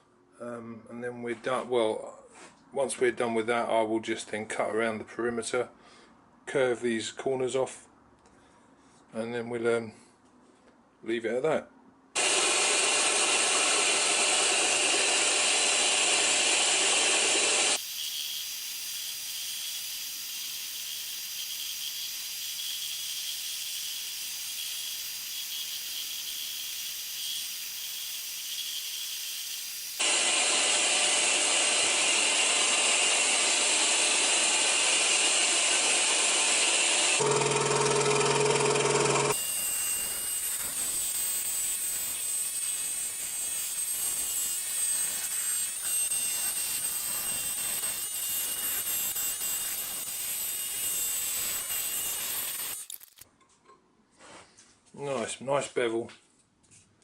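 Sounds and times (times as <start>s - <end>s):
scroll saw cutting plywood: 12.2s - 53.2s.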